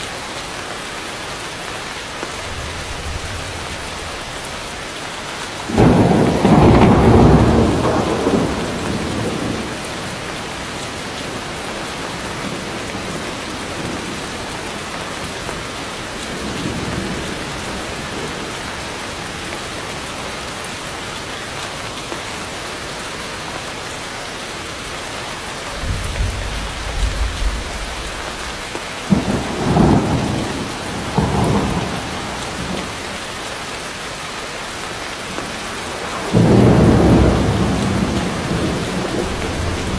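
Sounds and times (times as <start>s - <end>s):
heavy rain on foliage: 0.0s - 39.9s
thunder rumbling: 2.2s - 15.6s, 25.4s - 33.2s, 35.3s - 39.9s.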